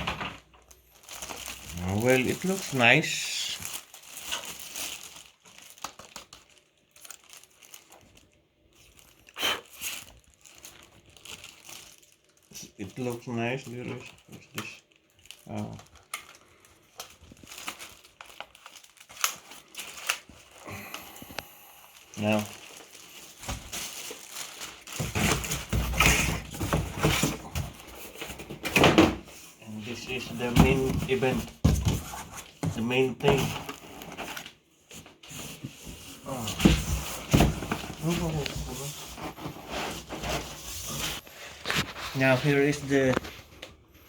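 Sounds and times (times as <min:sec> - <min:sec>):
packaging crinkling and rustling: 0:00.0 - 0:44.0
cardboard rustling and scraping: 0:22.2 - 0:43.5.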